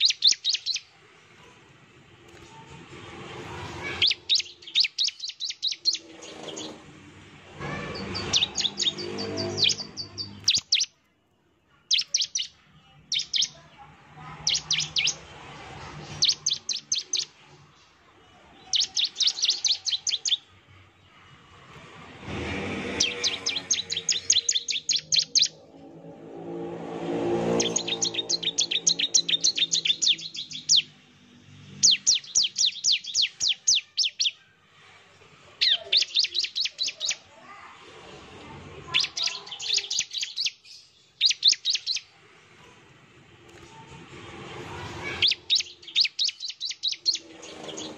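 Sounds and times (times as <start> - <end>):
bird singing sharp high chips: 0.0 - 0.9, 3.8 - 6.8, 7.8 - 11.0, 11.9 - 13.6, 14.4 - 15.3, 16.0 - 18.0, 18.6 - 20.5, 22.8 - 25.7, 27.4 - 34.4, 35.6 - 37.3, 38.9 - 42.1, 45.0 - 47.9.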